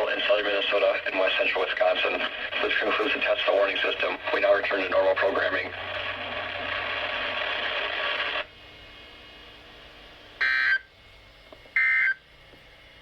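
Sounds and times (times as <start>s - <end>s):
radio hiss: 0.0s - 8.5s.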